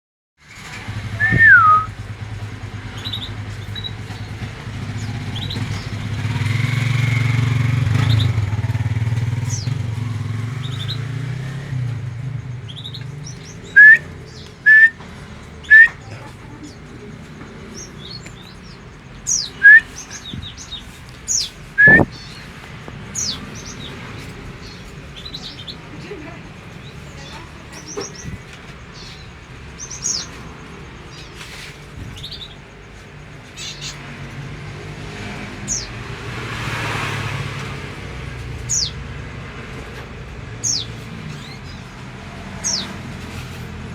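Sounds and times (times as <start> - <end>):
passing vehicle hum: 0.5 - 43.9
myna whistled calls: 0.9 - 2.2, 12.6 - 16.9, 17.8 - 22.5, 26.8 - 30.4.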